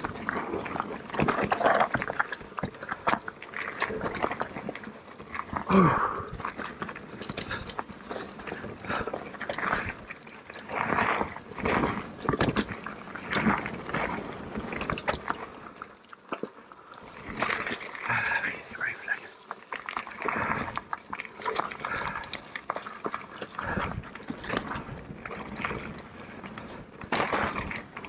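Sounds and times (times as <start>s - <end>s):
mountain bike rattling: 0.0s - 28.0s
heavy rhythmic breathing: 7.4s - 10.0s, 20.2s - 22.5s, 23.2s - 25.1s
tyre noise: 16.4s - 18.5s, 19.8s - 28.0s.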